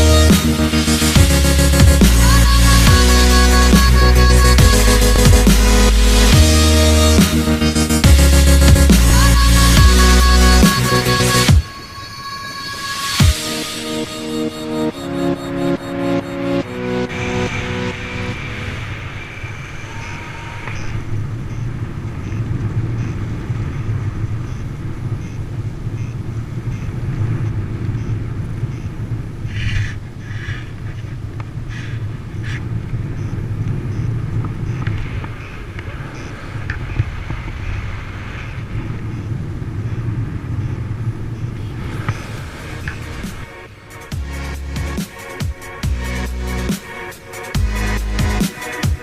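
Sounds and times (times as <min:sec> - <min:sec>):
wind rushing over microphone: 0:17.0 - 0:44.1.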